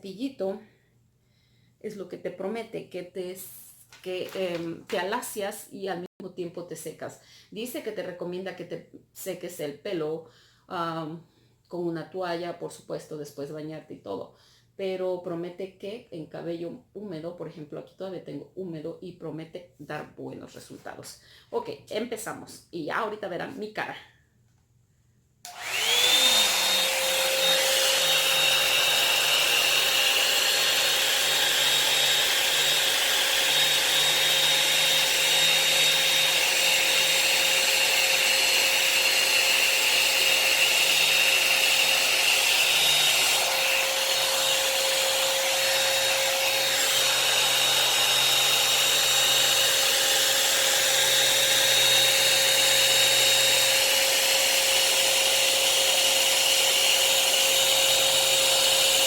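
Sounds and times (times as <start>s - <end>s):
hair dryer brush motor whine: 25.5s - 59.0s.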